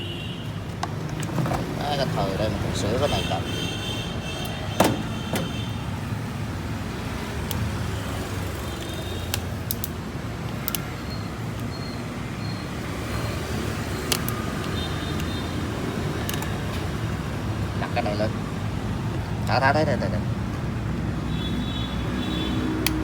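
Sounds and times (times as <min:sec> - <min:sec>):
road traffic rumble: 0:00.0 - 0:23.0
sharp clicks and knocks: 0:04.4 - 0:05.8.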